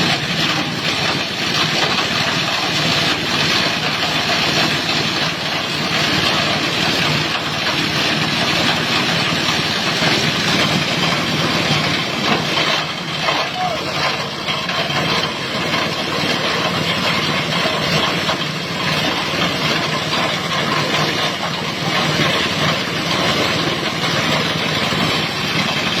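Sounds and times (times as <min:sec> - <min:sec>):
plastic shredding machine running: 0:00.0 - 0:26.0.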